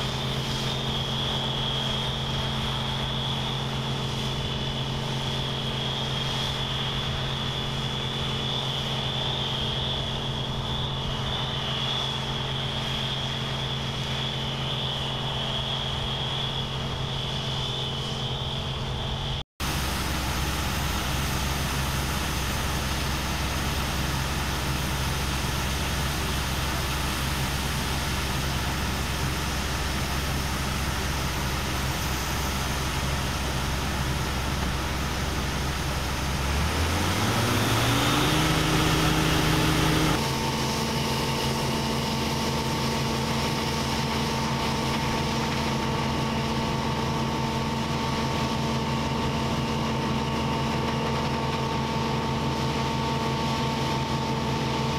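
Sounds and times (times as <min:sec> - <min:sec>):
combine harvester running: 0:00.0 - 0:15.5, 0:19.6 - 0:54.9
rising whine: 0:00.0 - 0:49.4
steady humming drone: 0:00.0 - 0:54.9.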